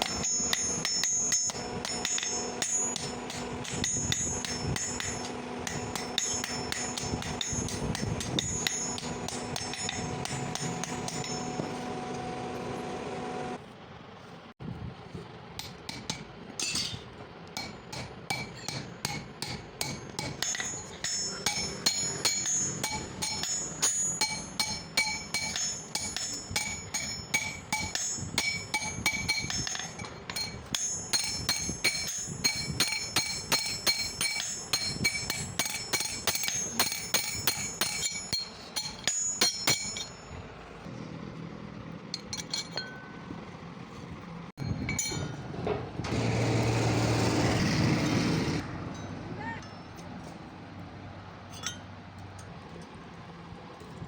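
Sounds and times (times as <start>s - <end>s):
hammer ringing on steel anvil: 0.0s - 11.9s, 17.6s - 40.4s, 44.6s - 45.4s
steady machine hum: 0.0s - 13.6s, 17.6s - 49.0s.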